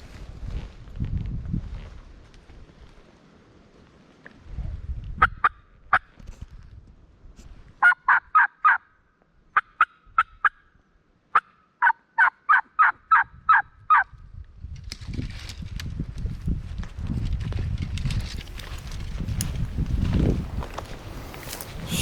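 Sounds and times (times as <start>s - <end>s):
turkey call clucks: 7.8s - 8.9s, 11.4s - 14.0s
turkey call yelps: 7.8s - 8.9s, 11.4s - 14.0s.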